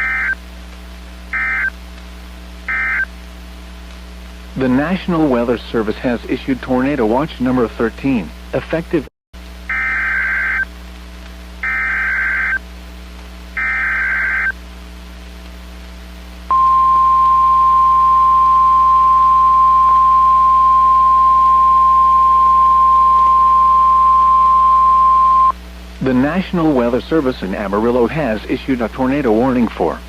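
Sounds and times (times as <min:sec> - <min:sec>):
screeching data tone bursts: 0:00.0 - 0:00.4, 0:01.3 - 0:01.7, 0:02.7 - 0:03.1, 0:09.7 - 0:10.7, 0:11.6 - 0:12.6, 0:13.6 - 0:14.6, 0:16.5 - 0:25.6
steady alarm tone: 0:00.0 - 0:00.4, 0:01.3 - 0:01.7, 0:02.7 - 0:03.1, 0:09.7 - 0:10.7, 0:11.6 - 0:12.6, 0:13.6 - 0:14.6, 0:16.5 - 0:25.6.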